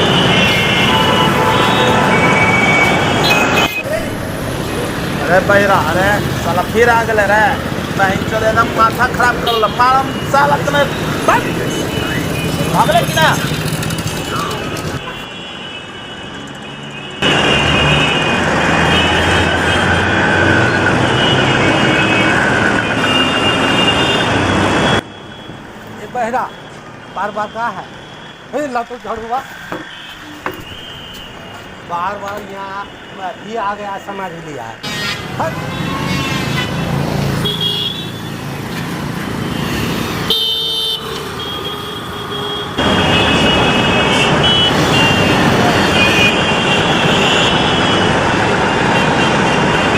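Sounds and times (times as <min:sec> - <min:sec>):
vehicle horns honking: 0:00.0 - 0:04.0, 0:09.2 - 0:13.4, 0:14.9 - 0:20.1, 0:20.7 - 0:25.5, 0:34.8 - 0:38.5, 0:39.4 - 0:48.2
road traffic engines humming: 0:00.0 - 0:49.9.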